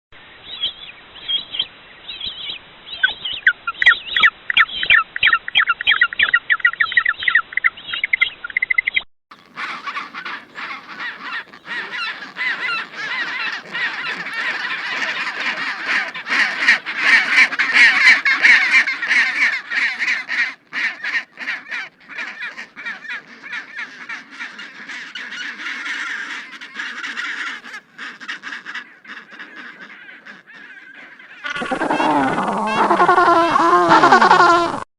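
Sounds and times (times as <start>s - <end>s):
penguin colony chorus: 9.4s - 34.9s
penguins honking: 9.4s - 34.9s.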